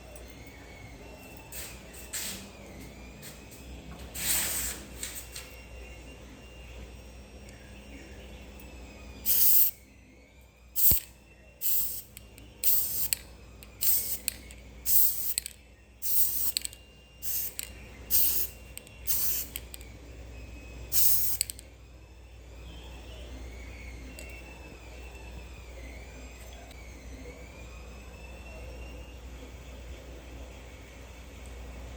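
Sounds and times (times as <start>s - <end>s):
spray paint hissing bursts: 9.2s - 9.8s, 10.8s - 13.2s, 13.8s - 19.7s, 20.9s - 21.6s.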